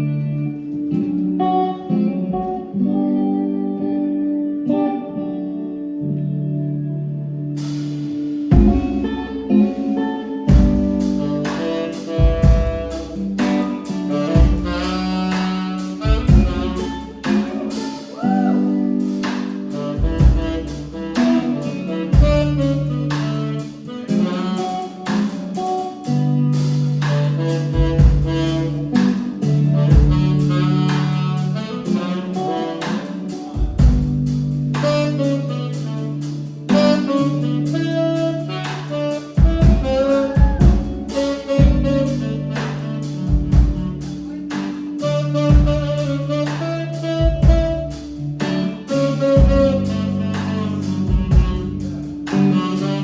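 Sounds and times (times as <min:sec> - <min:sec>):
jazzy instrumental band music: 0:00.0 - 0:53.0
saxophone melody: 0:00.0 - 0:53.0
drum kit: 0:07.4 - 0:53.0
sustained bass: 0:33.3 - 0:38.5, 0:39.3 - 0:53.0.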